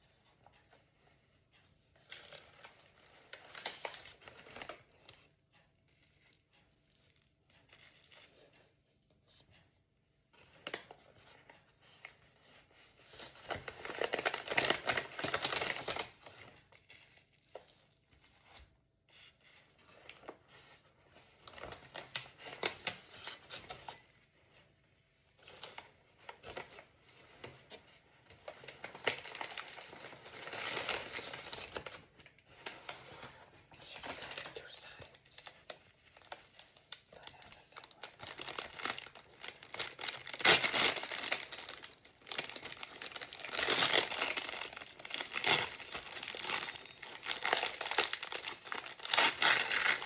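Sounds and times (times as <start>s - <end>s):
paper bags and wrappers rustling: 25.3s - 50.0s.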